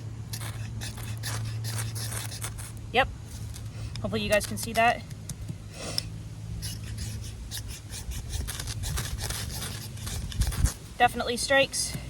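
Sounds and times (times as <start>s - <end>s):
knife rasping on ferro rod: 0.0s - 3.7s, 6.6s - 11.3s.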